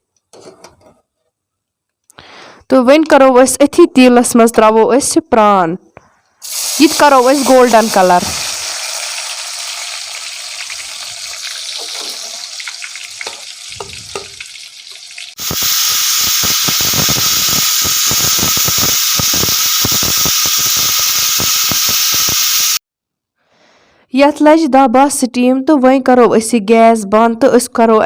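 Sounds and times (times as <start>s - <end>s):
onions sizzling in oil: 6.4s - 22.8s
pressure cooker whistling: 15.4s - 22.8s.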